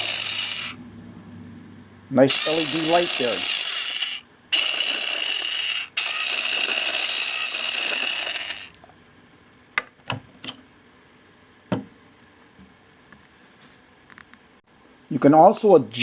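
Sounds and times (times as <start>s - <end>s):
pepper mill motor whirring: 0.0s - 0.8s, 2.3s - 8.8s.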